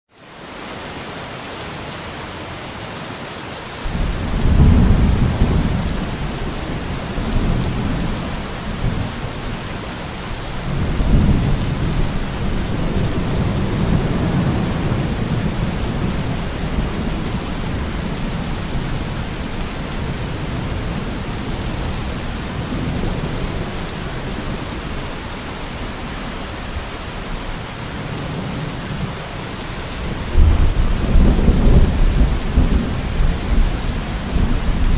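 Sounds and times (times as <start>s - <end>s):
heavy rain hiss: 0.2s - 34.9s
rolling thunder rumbling: 3.9s - 26.0s, 30.0s - 34.9s.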